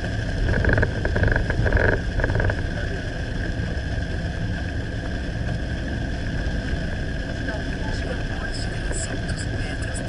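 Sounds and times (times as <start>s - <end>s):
car cabin road rumble: 0.0s - 10.0s
faint steady whine: 0.0s - 10.0s.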